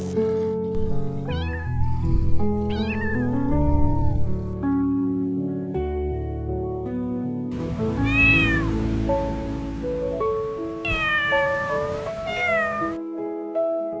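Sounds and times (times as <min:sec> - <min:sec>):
light background music: 0:00.0 - 0:14.0
cat meowing: 0:00.8 - 0:04.4, 0:08.0 - 0:08.8, 0:10.8 - 0:13.0.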